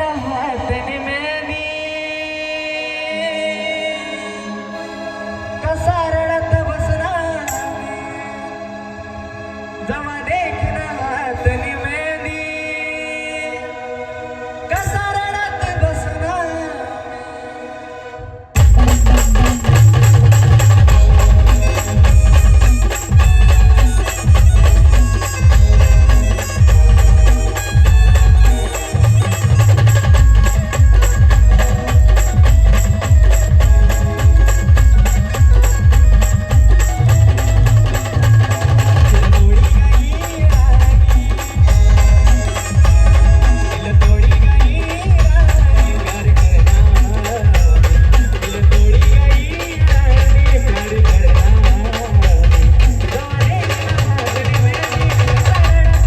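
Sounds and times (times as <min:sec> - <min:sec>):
drums: 0:18.6 - 0:56.0
live band playing folk-pop: 0:18.6 - 0:56.0.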